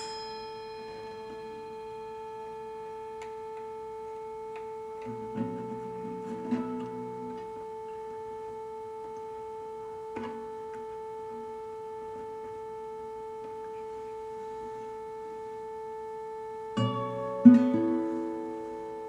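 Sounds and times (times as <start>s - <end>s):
ambient drone note: 0.0s - 19.0s
soft plucked note: 3.1s - 8.5s, 10.0s - 11.5s, 16.7s - 19.0s.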